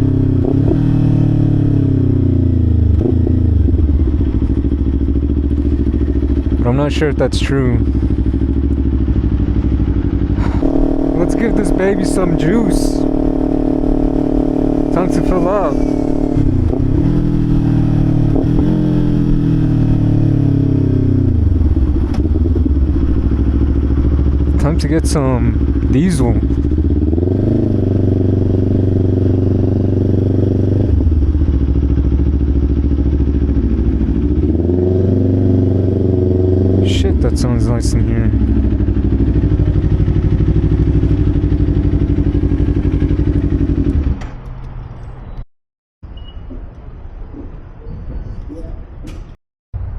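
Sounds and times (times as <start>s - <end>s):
motorcycle engine idling: 1.8s - 44.9s
motorcycle engine coasting to idle: 2.8s - 6.6s, 7.8s - 11.8s, 21.2s - 24.7s, 31.0s - 34.6s, 38.3s - 45.4s.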